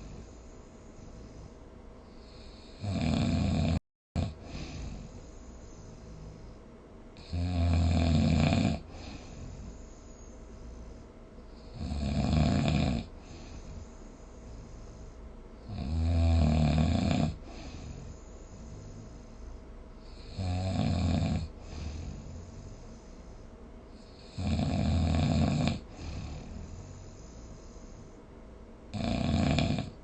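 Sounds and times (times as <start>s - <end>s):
quiet breathing: 0.0s - 30.0s
person snoring: 1.0s - 6.6s, 7.2s - 19.3s, 20.0s - 23.0s, 24.0s - 28.1s, 28.9s - 30.0s.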